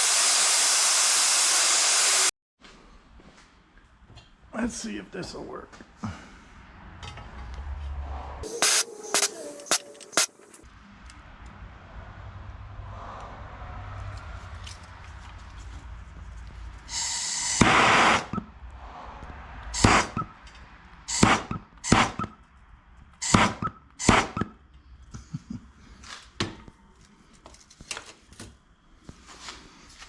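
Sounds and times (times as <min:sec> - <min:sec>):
hissing burst: 0:00.0 - 0:02.3, 0:08.4 - 0:10.6, 0:16.9 - 0:18.3.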